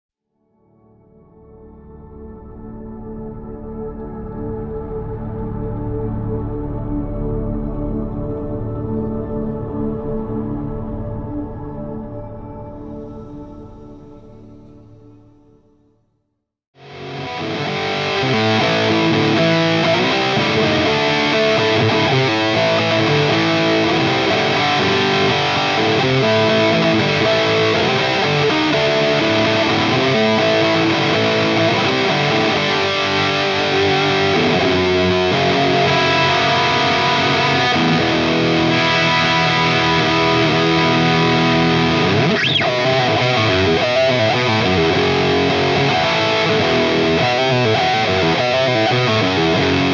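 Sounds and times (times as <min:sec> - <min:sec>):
distorted electric guitar with delay: 0:16.8 - 0:49.9.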